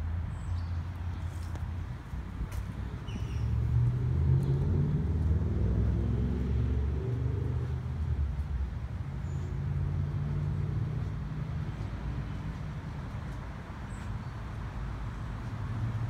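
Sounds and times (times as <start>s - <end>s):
vehicle engine rumbling: 0.0s - 16.0s.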